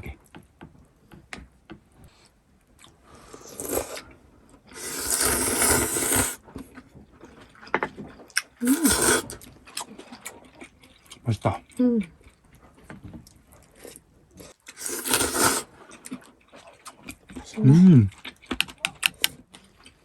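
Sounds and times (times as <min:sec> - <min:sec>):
loud slurp of noodles: 0:03.2 - 0:04.1, 0:04.7 - 0:06.4, 0:08.6 - 0:09.4, 0:14.7 - 0:15.8
chewing and utensil clicks: 0:18.1 - 0:20.0.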